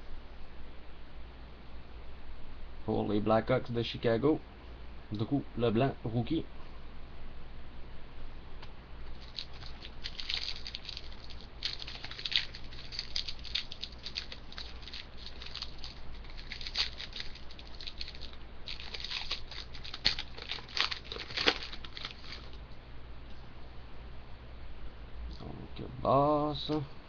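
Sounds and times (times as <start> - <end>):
trading cards shuffling: 9.1 - 22.6.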